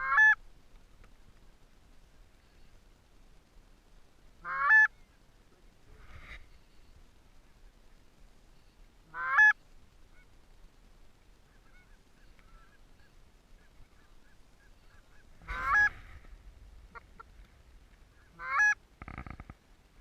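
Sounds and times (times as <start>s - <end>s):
faint background goose honks: 0.0s - 0.4s, 4.4s - 7.8s, 8.4s - 10.5s, 11.3s - 19.4s
goose honking: 0.0s - 0.4s, 4.4s - 5.0s, 9.1s - 9.6s, 11.5s - 16.1s, 18.1s - 18.8s.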